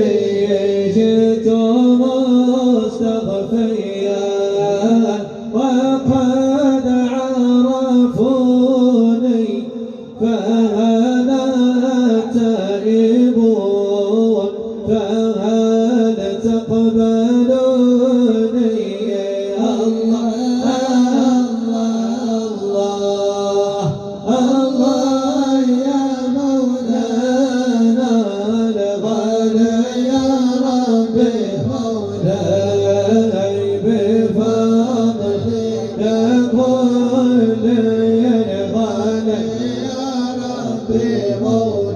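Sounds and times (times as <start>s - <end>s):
steady held drone: 18.8s - 41.9s.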